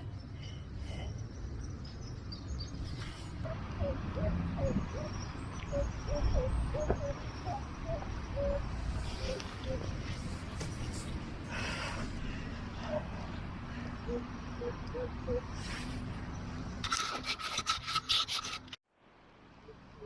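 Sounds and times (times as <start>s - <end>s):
wind rumble on microphone: 2.3s - 11.5s.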